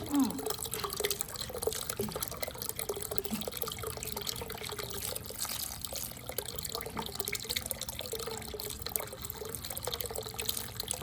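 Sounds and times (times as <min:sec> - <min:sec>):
small drips and ticks: 0:00.0 - 0:11.0
water trickling through toy run: 0:00.0 - 0:11.0.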